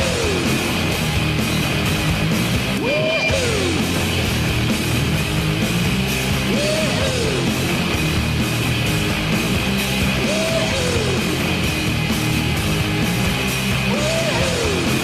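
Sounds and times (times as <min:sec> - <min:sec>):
loud rock song: 0:00.0 - 0:15.0.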